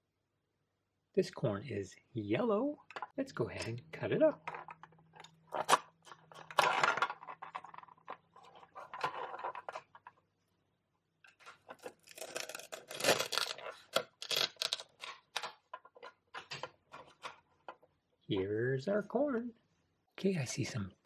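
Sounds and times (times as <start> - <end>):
toy pieces clicking and clattering: 4.5 - 10.0, 11.8 - 16.7
velcro ripping: 11.8 - 15.0.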